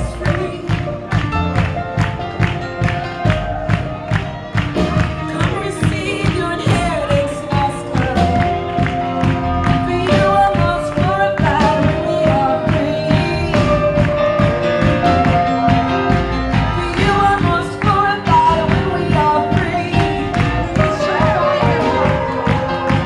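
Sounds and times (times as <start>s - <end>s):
drum beat: 0.0s - 23.0s
worship band playing: 0.0s - 23.0s
voices singing: 16.6s - 23.0s.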